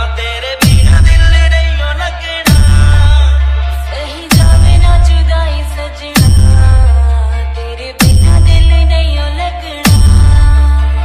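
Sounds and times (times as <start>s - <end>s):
bass-heavy remix music: 0.0s - 11.0s
falling bass sweep: 0.6s - 1.5s, 2.5s - 3.3s
hard bass hit: 0.6s - 1.8s, 2.5s - 3.6s, 4.3s - 5.4s, 6.2s - 7.2s, 8.0s - 9.2s, 9.8s - 11.0s.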